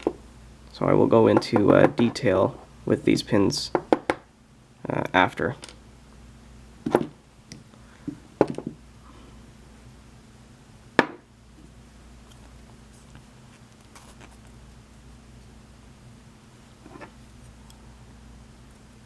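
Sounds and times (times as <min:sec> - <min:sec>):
faint steady hum: 0:00.0 - 0:19.0.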